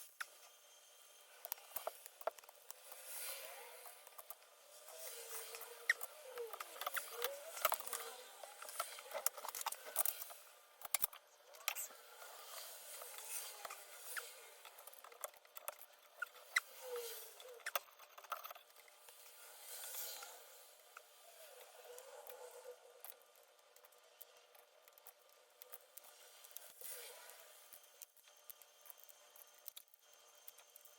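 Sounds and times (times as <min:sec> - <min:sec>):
plastic keyboard parts clicking: 0:05.6 - 0:11.9.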